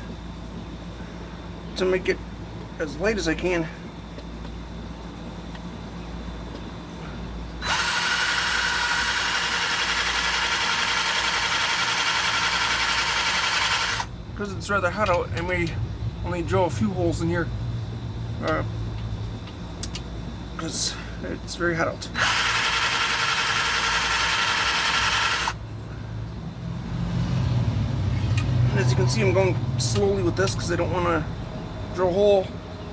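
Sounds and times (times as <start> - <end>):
electric drill running: 7.6 - 14.1, 22.2 - 25.6
low hum: 13.8 - 22.4, 25.4 - 32.9.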